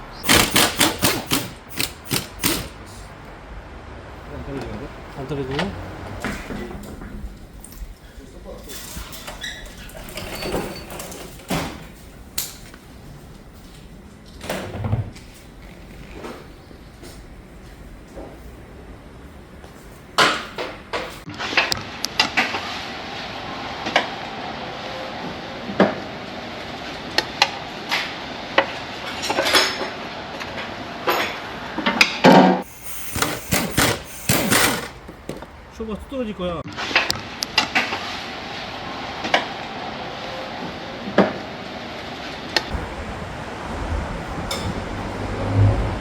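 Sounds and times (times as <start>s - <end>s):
metal tools clinking on steel: 8.6s - 11.4s
heavy thud: 42.7s - 46.0s
metal knocks from tools: 44.4s - 45.0s.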